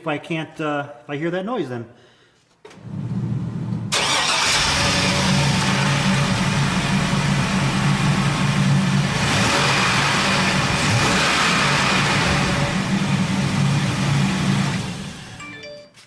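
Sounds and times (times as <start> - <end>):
van engine idling: 3.6 - 15.4.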